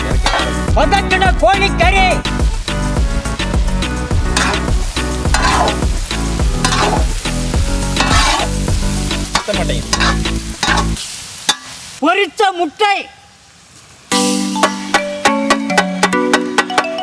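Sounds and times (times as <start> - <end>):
food sizzling in hot oil: 0.0 - 12.6
utensil scraping pan: 4.3 - 4.7, 5.3 - 5.9, 6.6 - 7.2, 7.9 - 8.6, 9.4 - 11.7.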